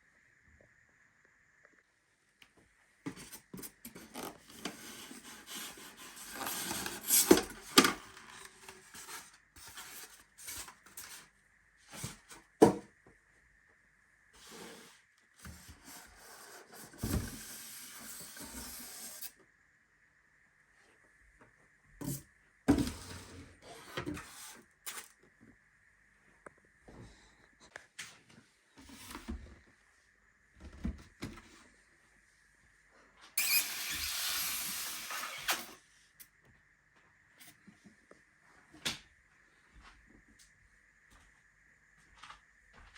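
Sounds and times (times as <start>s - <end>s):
packaging rustling and scraping: 3.1s - 11.3s.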